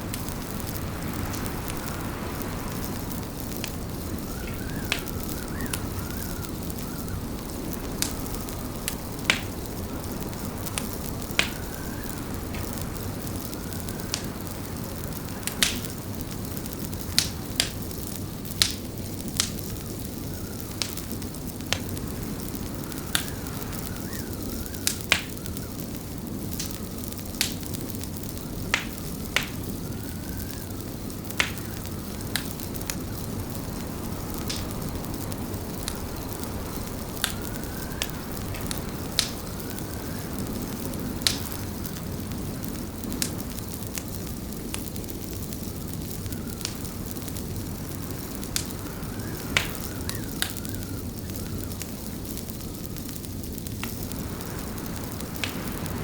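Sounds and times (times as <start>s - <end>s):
steady low rumble: 0.0s - 18.5s, 30.8s - 49.1s, 53.1s - 56.0s
fire crackling and popping: 0.0s - 56.0s.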